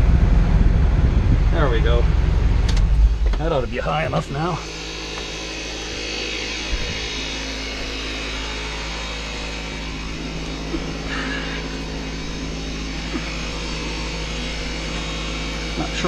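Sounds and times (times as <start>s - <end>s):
tractor engine idling: 0.0s - 16.0s.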